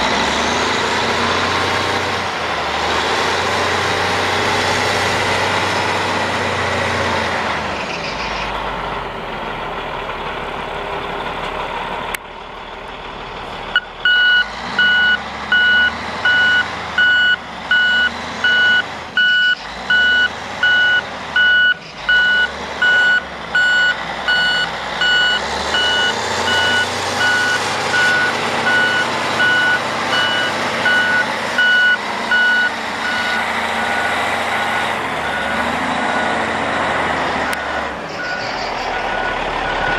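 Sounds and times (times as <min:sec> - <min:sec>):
diesel engine running: 0:00.0 - 0:39.9
reverse alarm beeping: 0:13.8 - 0:36.5.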